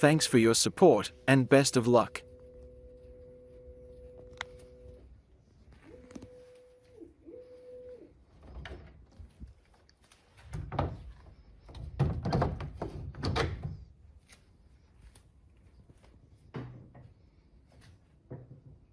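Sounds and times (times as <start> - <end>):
hard objects knocking and clattering: 10.5 - 13.7.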